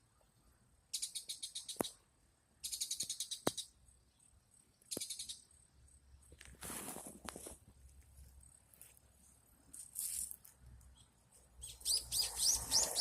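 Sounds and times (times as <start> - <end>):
bird chirping: 0.9 - 2.0, 2.6 - 6.0, 10.8 - 13.0
bird rasping call: 11.7 - 13.0.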